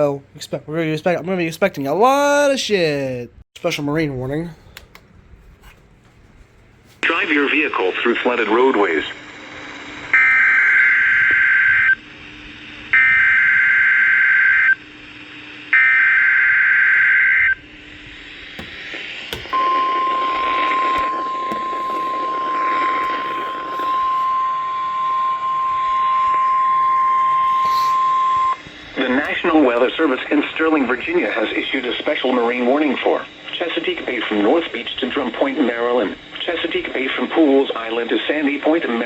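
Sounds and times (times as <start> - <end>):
radio hiss: 7.0 - 12.8, 18.2 - 25.0, 27.1 - 39.0
steady warning alarm tone: 18.6 - 29.5
warbling data header screech: 27.2 - 28.3.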